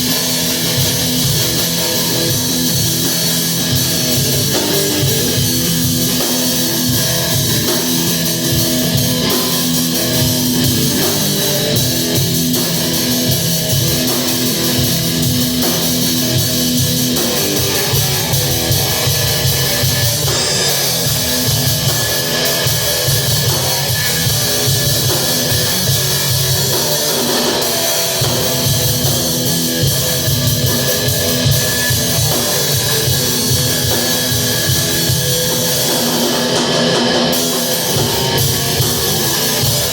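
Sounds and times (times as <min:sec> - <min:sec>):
driving electric guitar: 0:00.0 - 0:39.9
drums and cymbals: 0:00.0 - 0:39.9
loud rock music: 0:00.0 - 0:39.9.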